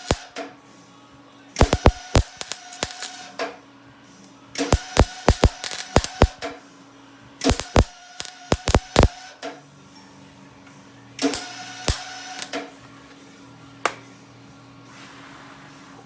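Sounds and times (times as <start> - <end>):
welding arc crackling: 0.0 - 0.2, 1.6 - 3.2, 4.7 - 6.4, 7.5 - 9.2, 11.3 - 12.5.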